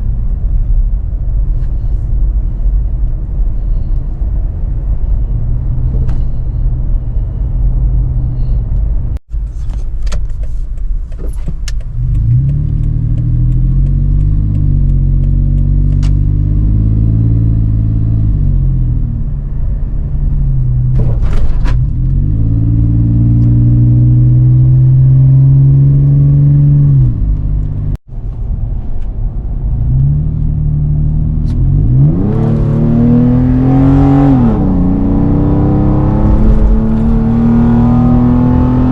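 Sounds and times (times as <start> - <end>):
deep engine exhaust revving: 11.9 - 21.0, 21.8 - 28.0, 29.8 - 38.9.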